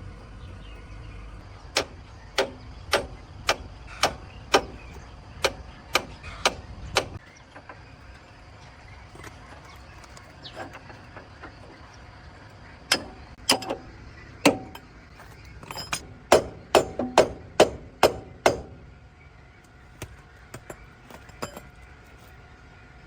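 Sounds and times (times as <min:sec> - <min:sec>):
hammer striking metal: 0:01.8 - 0:07.2, 0:12.9 - 0:14.9, 0:15.6 - 0:18.8.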